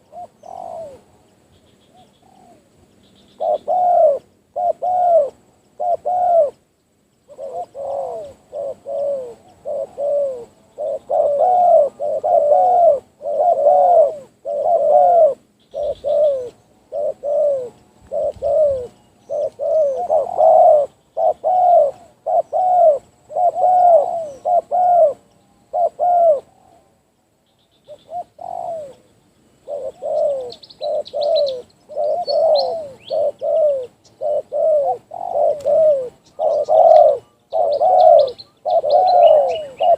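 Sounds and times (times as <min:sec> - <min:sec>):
dove cooing: 0:00.0 - 0:06.6, 0:07.2 - 0:27.0, 0:27.9 - 0:39.9
small birds chirping: 0:00.0 - 0:26.8, 0:27.4 - 0:39.9.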